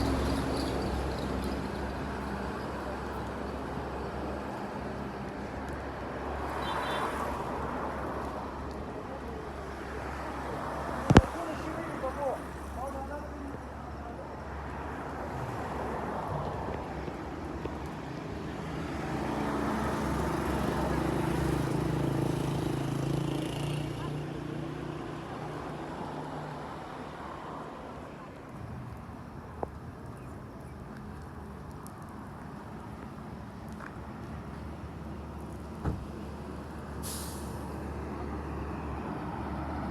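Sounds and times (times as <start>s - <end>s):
road traffic rumble: 0.0s - 39.9s.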